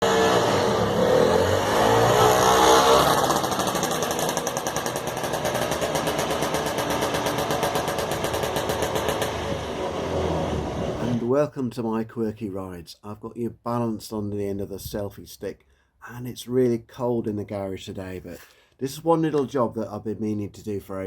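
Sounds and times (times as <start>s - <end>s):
small engine running: 0.0s - 11.2s.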